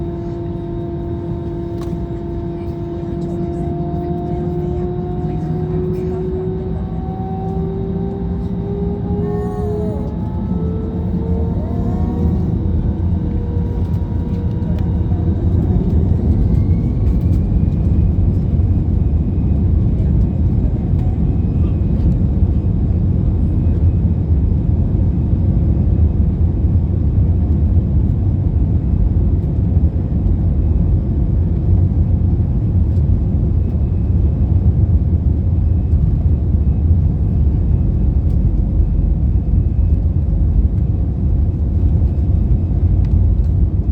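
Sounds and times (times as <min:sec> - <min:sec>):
thin engine whine: 0:00.0 - 0:22.4
jet engines rumbling: 0:00.0 - 0:43.9.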